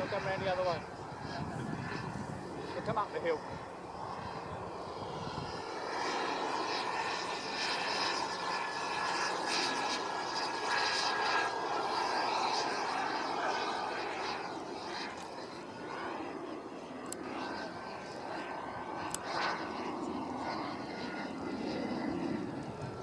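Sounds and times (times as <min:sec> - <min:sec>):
model jet engine rushing: 0:00.0 - 0:23.0.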